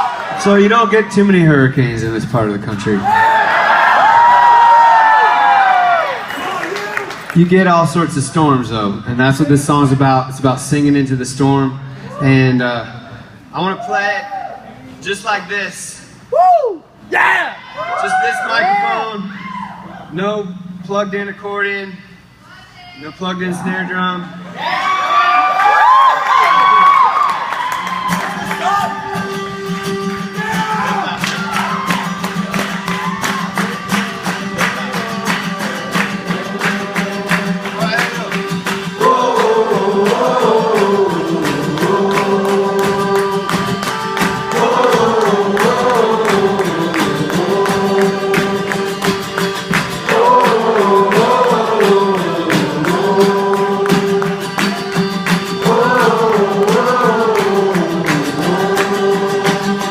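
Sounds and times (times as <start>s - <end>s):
guitar strumming: 27.8s - 59.9s.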